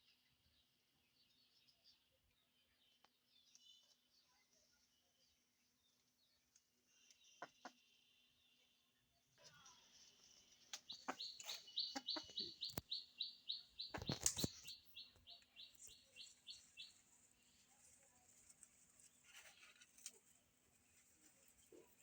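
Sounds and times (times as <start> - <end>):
bird chirping: 5.8 - 22.0.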